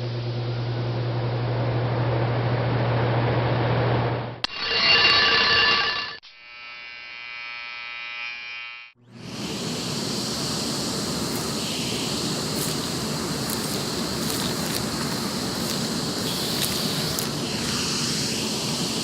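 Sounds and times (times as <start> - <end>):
appliance hum: 0.0 - 4.4, 9.0 - 19.0
electric shaver buzzing: 6.2 - 9.4, 10.4 - 19.0
vacuum cleaner rushing: 9.2 - 19.0
debris clicking in vacuum hose: 12.5 - 17.4.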